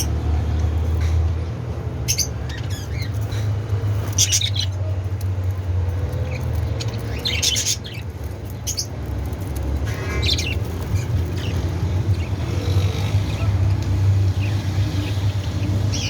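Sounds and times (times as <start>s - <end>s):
budgerigars chirping: 2.0s - 4.7s, 6.8s - 8.9s.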